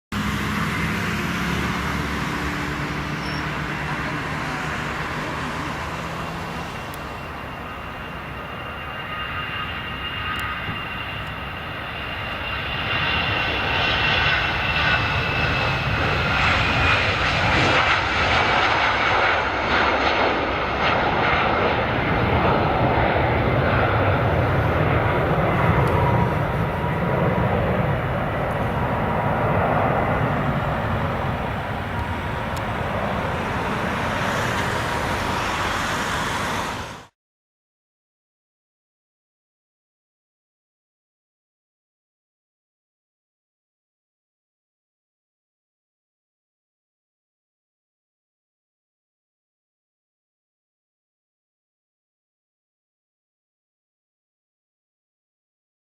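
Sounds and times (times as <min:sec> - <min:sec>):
jet engines roaring at takeoff: 0:00.1 - 0:37.2.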